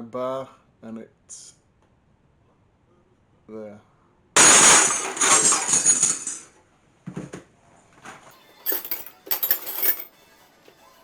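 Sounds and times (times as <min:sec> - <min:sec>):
metal spanners clattering: 0:04.4 - 0:06.4, 0:08.7 - 0:10.1.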